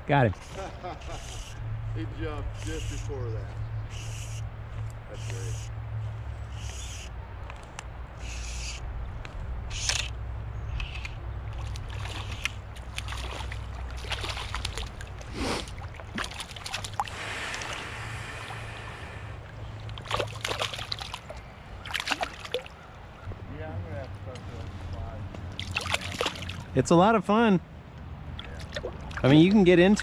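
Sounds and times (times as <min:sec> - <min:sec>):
river water splashing: 0:11.4 - 0:23.3, 0:25.5 - 0:26.8, 0:28.2 - 0:30.0.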